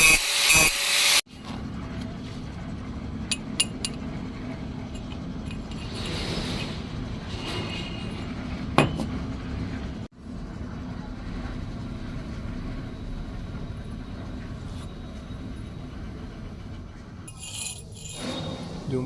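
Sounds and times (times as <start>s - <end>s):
machine hum: 1.5s - 19.0s
sharp metallic clink: 17.3s - 18.4s.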